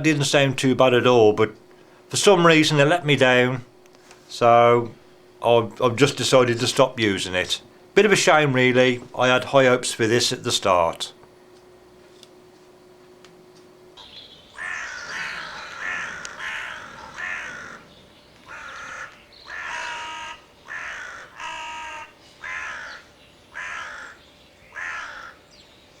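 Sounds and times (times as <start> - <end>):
crow call caws: 14.0 - 25.6.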